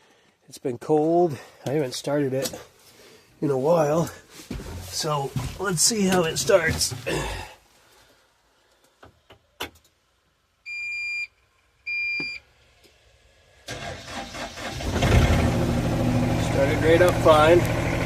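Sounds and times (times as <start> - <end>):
diesel engine cranking and running: 13.6 - 18.0.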